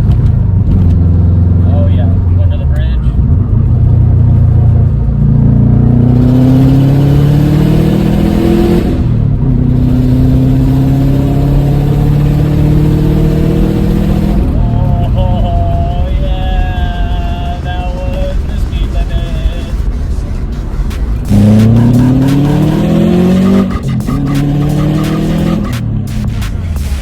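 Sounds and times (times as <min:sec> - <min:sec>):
car engine revving at full throttle: 0:00.0 - 0:27.0.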